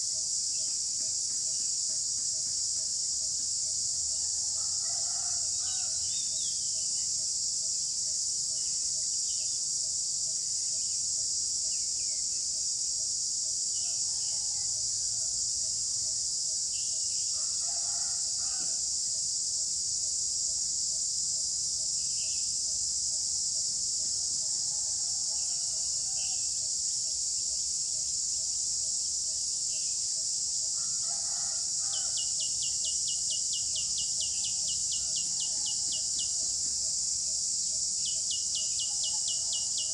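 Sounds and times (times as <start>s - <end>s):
high-pitched insect chorus: 0.0s - 39.9s
rooster crowing: 4.2s - 6.1s, 17.4s - 18.8s, 30.8s - 32.3s, 34.4s - 36.6s.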